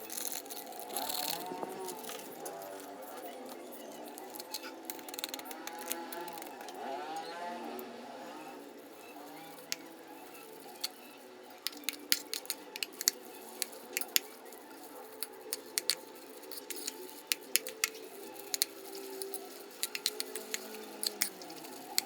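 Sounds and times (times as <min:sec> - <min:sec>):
faint steady background noise: 0:00.0 - 0:22.0
sharp irregular clicks and taps: 0:15.5 - 0:16.0, 0:19.8 - 0:22.0.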